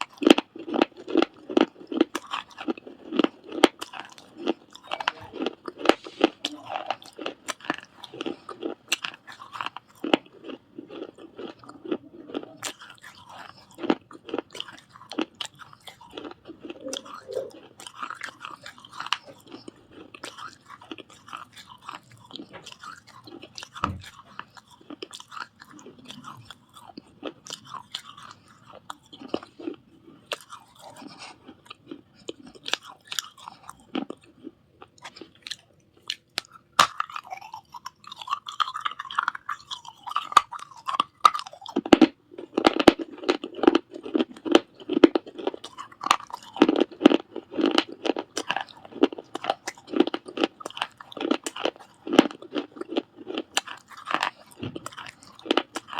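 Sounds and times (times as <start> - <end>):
clay pot pieces being chewed: 0.0 - 55.9.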